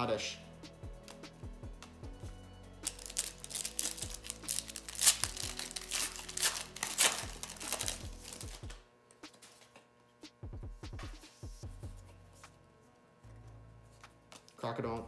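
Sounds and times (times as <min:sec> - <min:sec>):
faint background music: 0:00.0 - 0:15.0
foil wrapper tearing and crinkling: 0:02.8 - 0:08.8.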